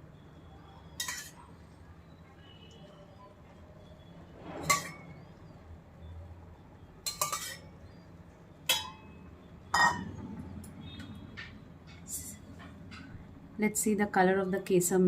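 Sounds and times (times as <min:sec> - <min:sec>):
spoon clinking on metal cookware: 0:01.0 - 0:01.5, 0:07.0 - 0:07.8, 0:08.7 - 0:10.2.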